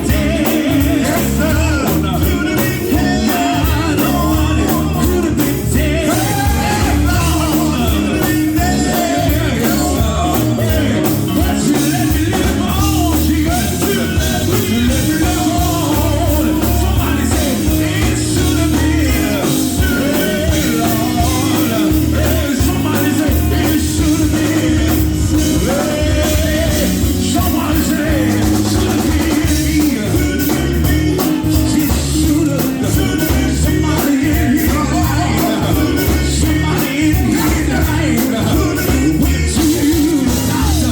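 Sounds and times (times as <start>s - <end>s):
heavy bass line: 0.0s - 40.9s
live gospel band playing: 0.0s - 40.9s
person singing: 0.0s - 40.9s.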